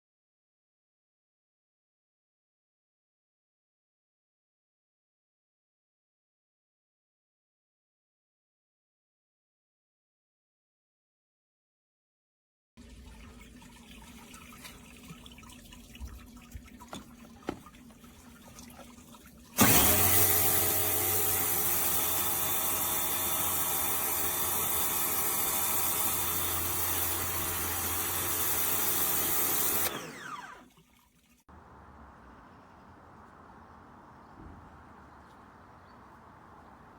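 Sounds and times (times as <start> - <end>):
water jet hissing: 16.8 - 30.6
pressure washer motor humming: 19.6 - 30.7.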